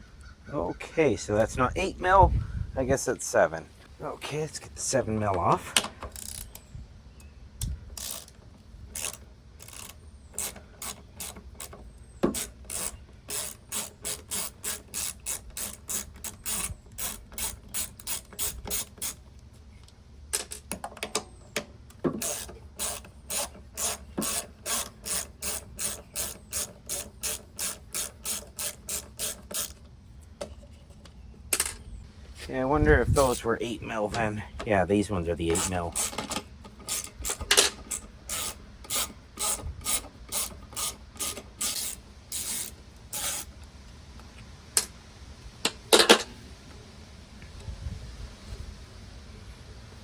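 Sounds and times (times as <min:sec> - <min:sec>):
ratchet wrench clicking: 0:06.1 - 0:06.7, 0:07.9 - 0:19.2, 0:22.2 - 0:29.8, 0:35.5 - 0:43.5.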